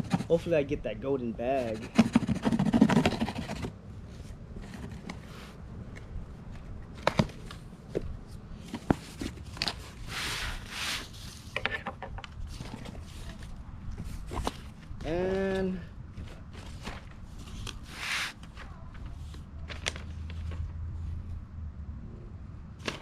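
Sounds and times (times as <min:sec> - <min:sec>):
package rubbing and scraping: 0:00.0 - 0:00.5, 0:01.6 - 0:03.7, 0:17.8 - 0:18.5.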